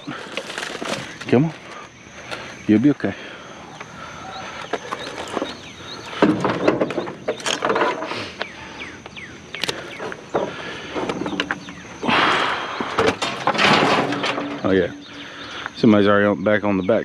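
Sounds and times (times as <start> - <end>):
scraping and rustling: 0.0 - 2.6, 4.4 - 8.4, 12.8 - 15.2
scrap metal knocks and clatters: 6.2 - 8.1, 12.9 - 15.2.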